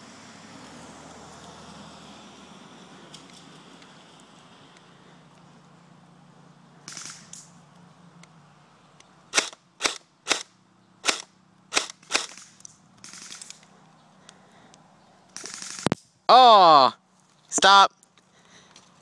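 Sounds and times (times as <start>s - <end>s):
airsoft gun shots: 6.9s - 7.3s, 9.3s - 13.5s, 15.4s - 15.9s.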